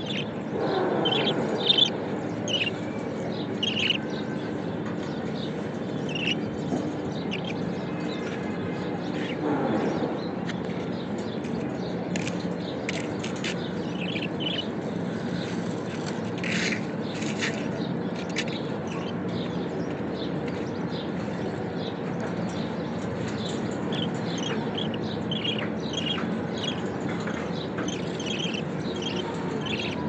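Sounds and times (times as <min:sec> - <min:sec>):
budgerigars chirping softly: 0:00.0 - 0:04.3, 0:06.0 - 0:06.5, 0:07.1 - 0:08.3, 0:12.9 - 0:14.7, 0:23.0 - 0:26.9, 0:27.6 - 0:30.0
steady low hum: 0:00.0 - 0:30.0.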